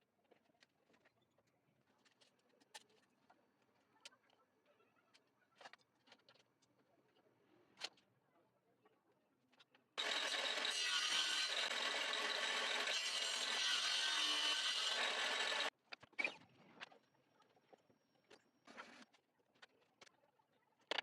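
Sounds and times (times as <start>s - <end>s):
power tool harsh noise: 10.0s - 15.7s.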